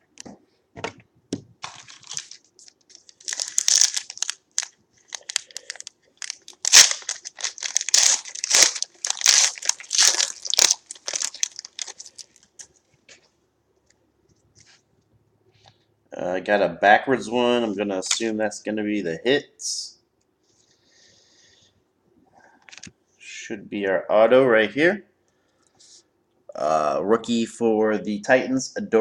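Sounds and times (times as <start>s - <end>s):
wrapper tearing and crinkling: 1.6s - 12.7s.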